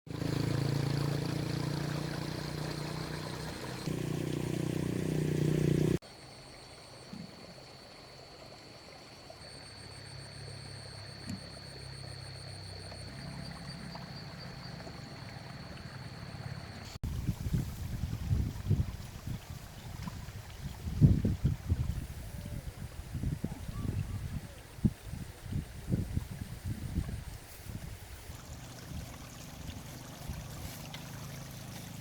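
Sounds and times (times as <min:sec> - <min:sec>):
motor running: 0:00.1 - 0:06.0.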